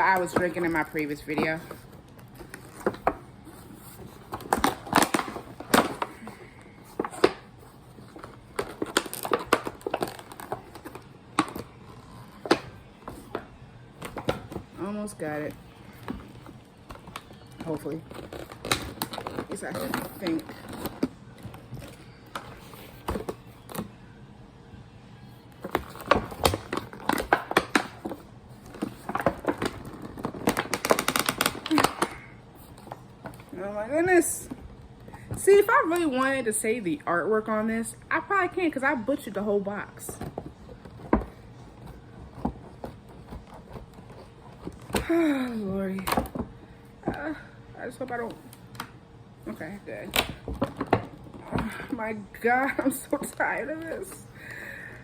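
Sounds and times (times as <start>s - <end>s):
packaging crinkling: 1.6s - 13.4s, 15.6s - 23.8s, 25.6s - 33.5s, 40.1s - 45.1s
scissors snipping packaging: 16.0s - 23.8s, 40.1s - 45.1s.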